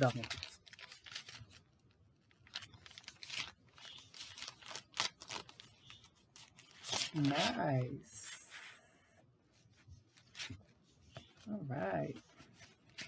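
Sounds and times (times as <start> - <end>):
packaging crinkling and rustling: 0.0 - 7.6.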